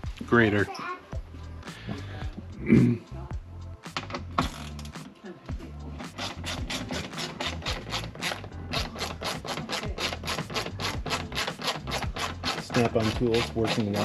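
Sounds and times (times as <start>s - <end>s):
ratchet clicking: 4.0s - 5.0s, 6.1s - 14.0s.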